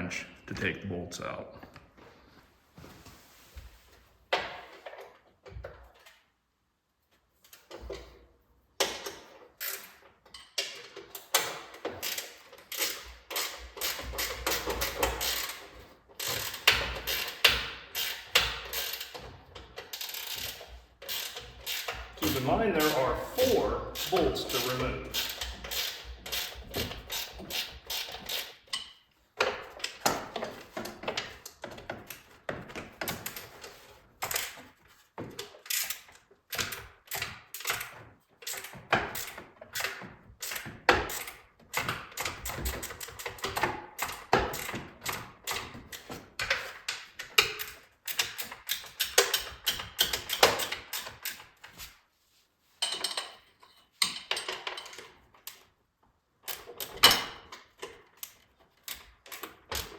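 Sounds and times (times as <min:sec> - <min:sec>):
ratchet wrench clicking: 0:11.2 - 0:19.2, 0:19.9 - 0:23.0, 0:24.0 - 0:28.9.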